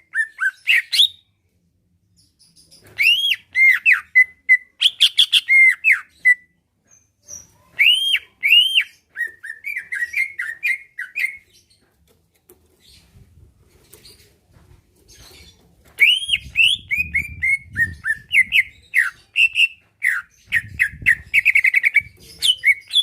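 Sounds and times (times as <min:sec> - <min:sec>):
bird singing whistled notes: 0:07.3 - 0:11.5, 0:16.0 - 0:23.0.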